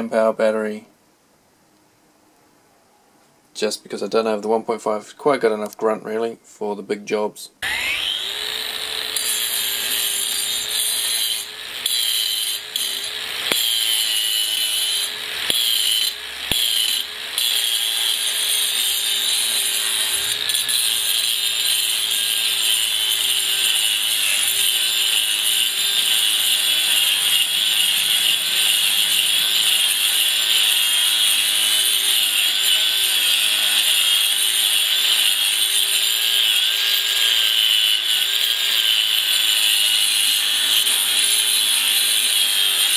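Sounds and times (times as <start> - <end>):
angle grinder grinding concrete: 7.6 - 42.9.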